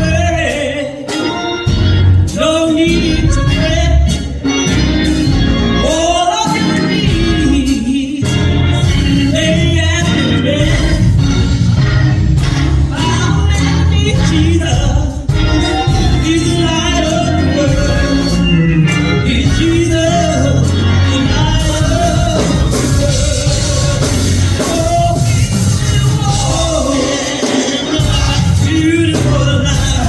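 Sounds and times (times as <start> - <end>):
live instrumental accompaniment: 0.0 - 30.0
person singing: 19.2 - 30.0.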